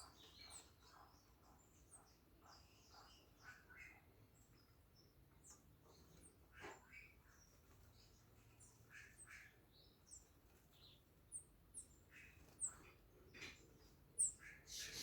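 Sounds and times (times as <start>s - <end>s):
birds chirping: 0.0s - 15.0s
lower bird calls: 14.2s - 15.0s.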